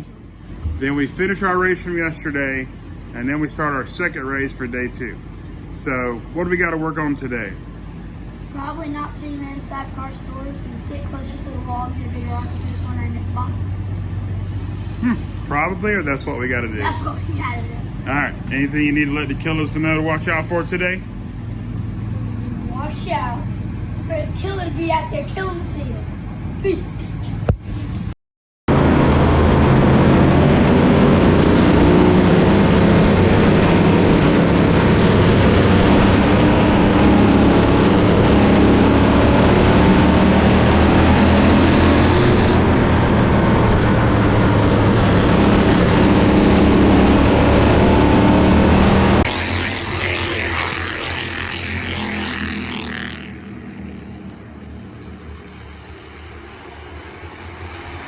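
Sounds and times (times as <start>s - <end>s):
race car engine running: 0.0s - 8.8s, 28.7s - 58.0s.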